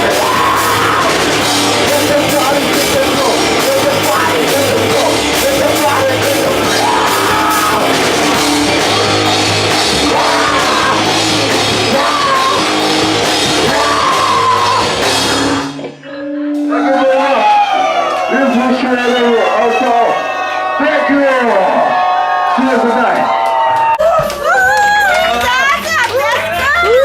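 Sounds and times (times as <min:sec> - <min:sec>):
person shouting singing: 0:00.0 - 0:15.1
rock band playing live: 0:00.0 - 0:22.2
drums: 0:00.0 - 0:27.0.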